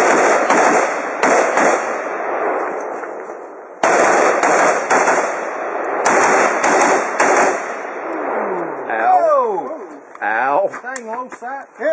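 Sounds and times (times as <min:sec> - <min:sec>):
rifle shots echoing: 0:00.0 - 0:03.0, 0:03.6 - 0:08.4.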